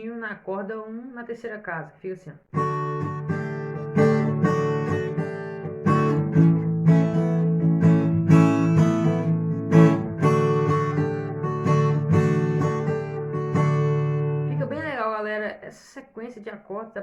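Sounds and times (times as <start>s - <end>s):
acoustic guitar strumming: 2.5s - 15.0s.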